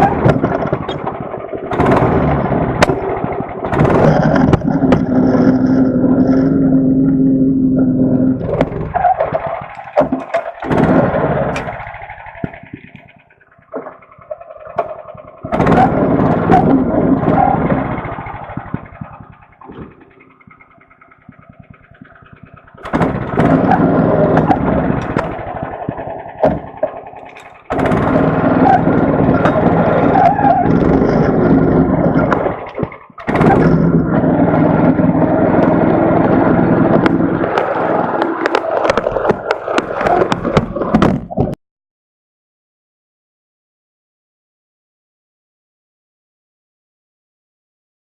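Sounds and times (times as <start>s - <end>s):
knocks and cracks: 0.0s - 6.6s, 8.4s - 41.6s
small engine revving: 0.0s - 41.4s.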